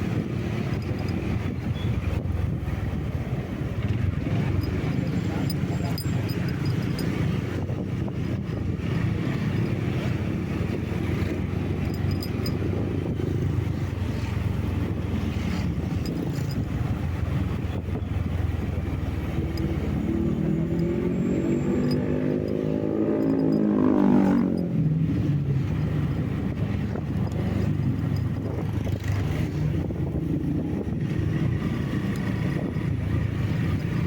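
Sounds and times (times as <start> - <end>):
vehicle engine and road noise: 0.0 - 34.0.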